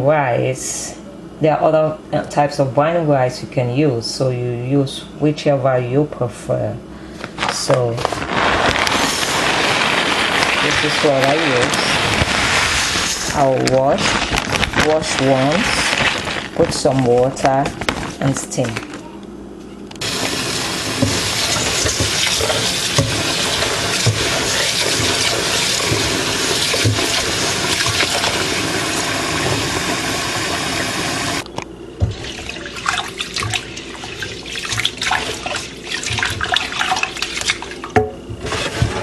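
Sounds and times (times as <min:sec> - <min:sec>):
rice splashing in water: 0:08.2 - 0:16.6, 0:20.0 - 0:31.4, 0:32.2 - 0:37.9
tap water running into a pot: 0:08.3 - 0:13.8, 0:20.0 - 0:31.4, 0:32.0 - 0:39.0.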